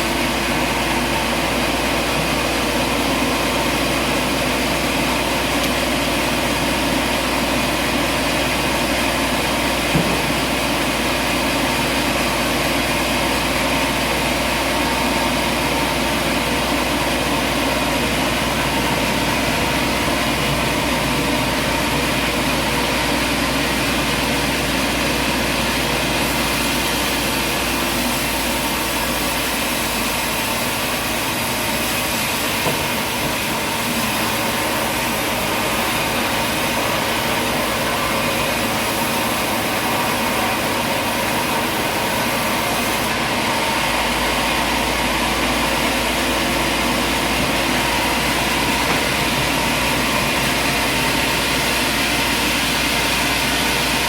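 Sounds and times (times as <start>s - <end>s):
short knock: 9.9s - 10.4s.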